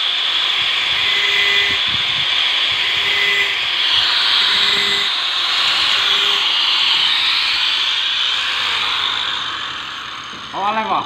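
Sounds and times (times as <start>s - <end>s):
saw being sharpened: 3.0s - 7.5s.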